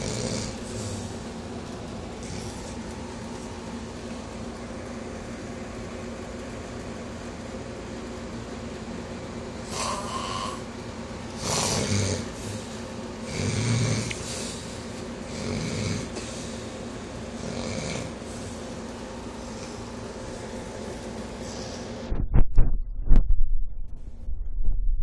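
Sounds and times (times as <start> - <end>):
person snoring loudly: 0.0 - 1.0, 9.7 - 10.7, 11.4 - 12.6, 13.2 - 14.2, 15.3 - 16.2, 17.4 - 18.2
steady background hum: 0.0 - 25.0.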